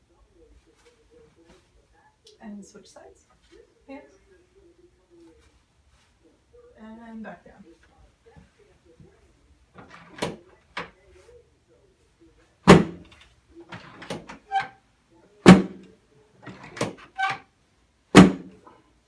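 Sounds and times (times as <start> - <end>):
rustling: 3.2 - 6.8
loud thuds on table: 12.7 - 13.1, 15.5 - 15.8, 18.2 - 18.5.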